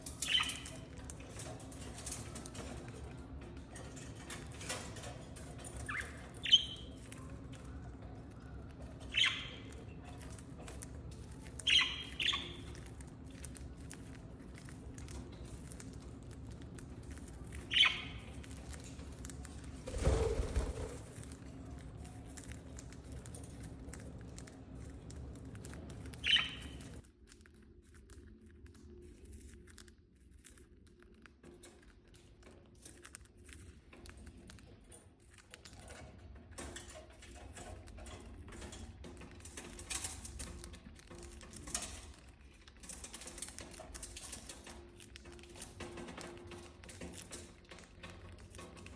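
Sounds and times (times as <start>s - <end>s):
low background hum: 0.0s - 48.9s
budgerigars chirping: 5.8s - 6.9s, 9.1s - 9.7s, 11.6s - 12.7s, 17.7s - 18.3s, 26.2s - 27.0s.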